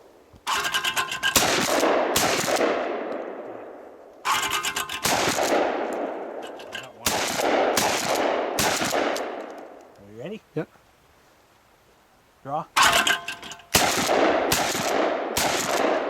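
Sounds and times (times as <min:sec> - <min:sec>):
shotgun blasts echoing: 0:01.4 - 0:06.4, 0:07.0 - 0:09.6, 0:13.7 - 0:16.0.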